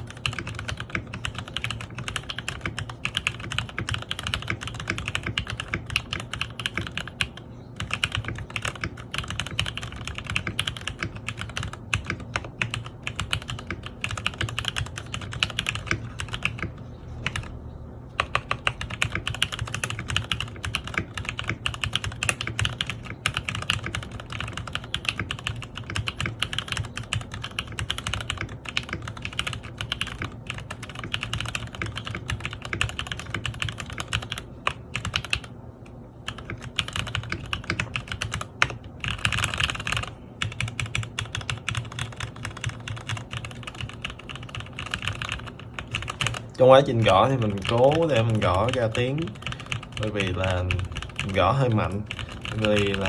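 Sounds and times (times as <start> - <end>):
fast typing on mechanical keyboard: 0.0 - 17.6, 18.2 - 35.5, 36.2 - 53.0.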